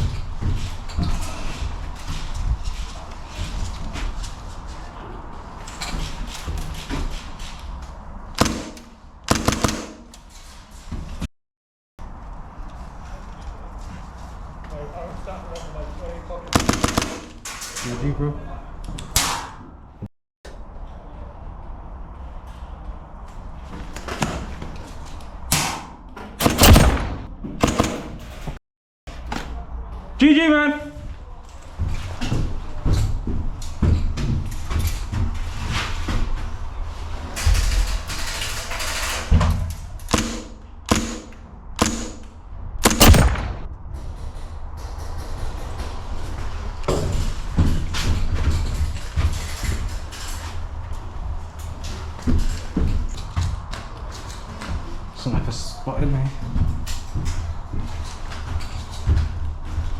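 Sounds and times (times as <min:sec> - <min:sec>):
steady background noise: 0:00.0 - 0:11.3, 0:12.0 - 0:59.9
airsoft gun shots: 0:08.4 - 0:10.2, 0:16.6 - 0:17.5, 0:25.5 - 0:28.3, 0:40.1 - 0:43.7.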